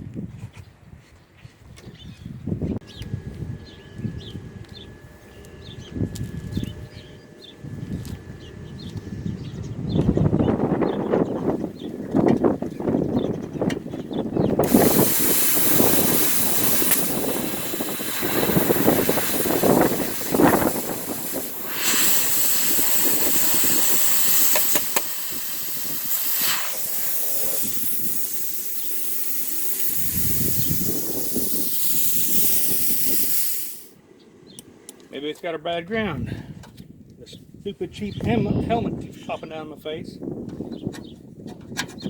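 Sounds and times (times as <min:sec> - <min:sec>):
plasma cutter torch hissing: 0:14.6 - 0:34.0.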